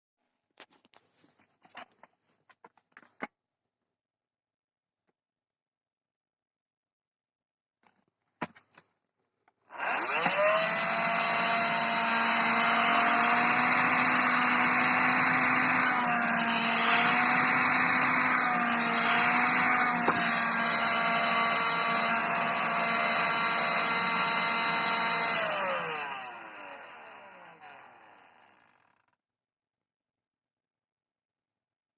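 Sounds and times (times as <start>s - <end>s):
cordless vacuum motor whining: 9.7s - 28.9s.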